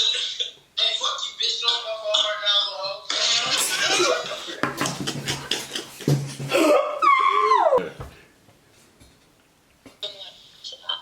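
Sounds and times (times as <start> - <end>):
people laughing hard: 3.3 - 7.7
high voice sliding down: 7.0 - 7.9.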